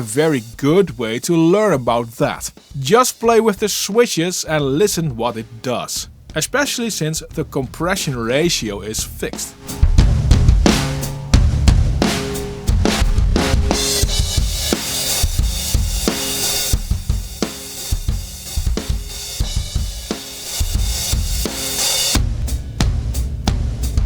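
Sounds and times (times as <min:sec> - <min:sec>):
drum kit playing a groove: 0:00.0 - 0:24.0.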